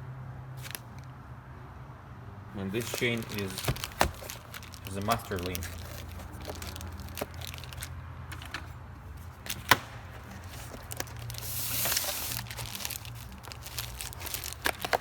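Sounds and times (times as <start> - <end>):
rustling: 2.8 - 15.0.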